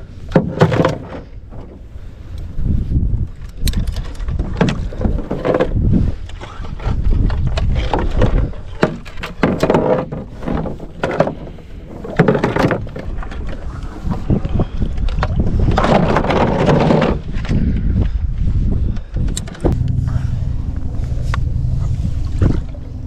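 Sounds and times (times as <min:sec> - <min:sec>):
steady low rumble: 0:17.4 - 0:23.0
paddle splashing in water: 0:19.7 - 0:23.0.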